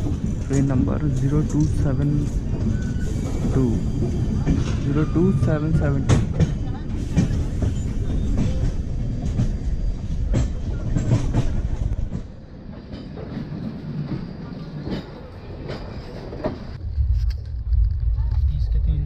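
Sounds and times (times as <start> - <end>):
train wheels clattering over rail joints: 6.0 - 16.8
deep low rumble: 16.8 - 19.0.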